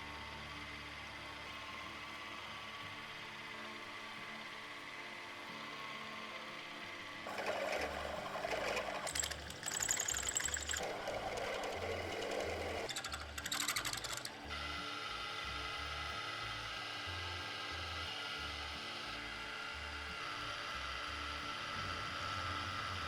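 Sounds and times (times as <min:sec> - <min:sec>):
power tool mechanical chatter: 0:07.2 - 0:23.0.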